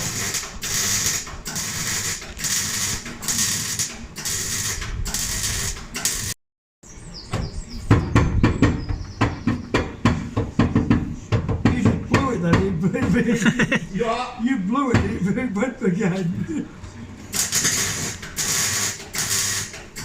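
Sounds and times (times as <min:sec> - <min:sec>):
welder crackling: 0:00.0 - 0:06.4, 0:17.3 - 0:20.0.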